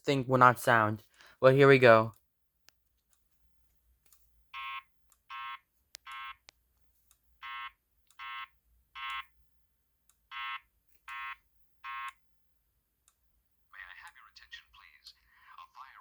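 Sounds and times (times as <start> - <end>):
fire alarm short beeps: 10.4 - 12.2.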